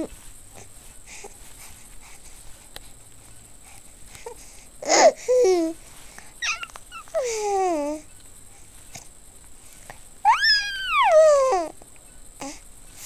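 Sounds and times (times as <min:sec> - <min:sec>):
high-pitched vocal calls: 0:06.4 - 0:08.1, 0:10.2 - 0:11.7.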